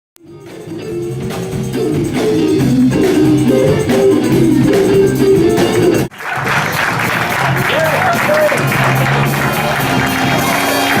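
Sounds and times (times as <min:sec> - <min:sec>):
melody over bass line: 0:00.2 - 0:06.1.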